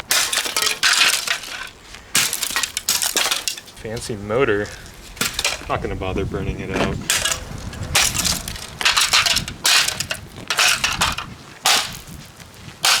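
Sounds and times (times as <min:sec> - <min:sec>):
plastic and metal breaking: 0:00.0 - 0:04.1, 0:04.7 - 0:05.8, 0:06.8 - 0:12.2
hard blows smashing hair dryer: 0:06.7 - 0:12.2.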